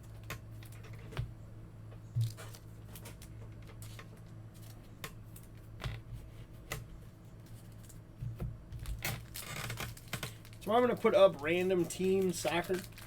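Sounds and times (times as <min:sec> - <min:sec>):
steady low hum: 0:00.0 - 0:13.0
card rustle: 0:09.2 - 0:13.0.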